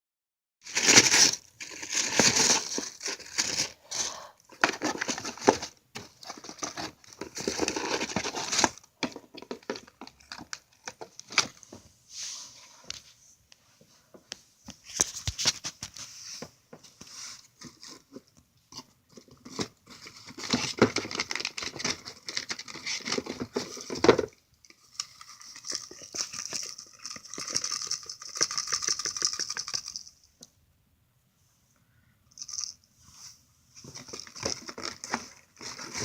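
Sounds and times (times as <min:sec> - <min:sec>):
paper and plastic crinkling: 0:00.6 - 0:11.7, 0:33.8 - 0:36.0.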